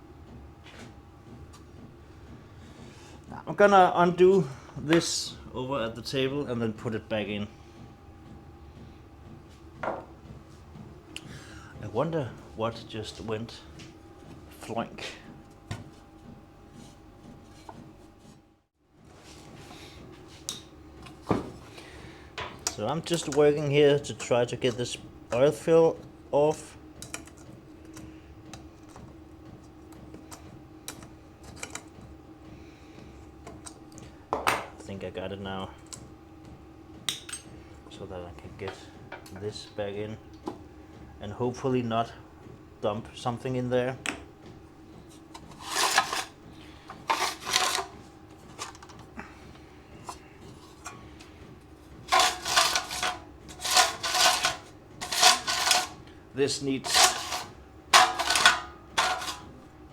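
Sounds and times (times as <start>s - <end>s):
plastic parts rubbing and scraping: 45.1s - 49.1s, 51.8s - 56.0s, 56.8s - 59.5s.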